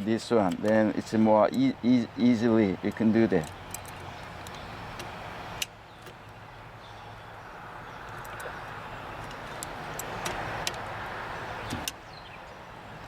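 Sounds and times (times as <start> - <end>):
small metal parts clicking: 2.8 - 5.1.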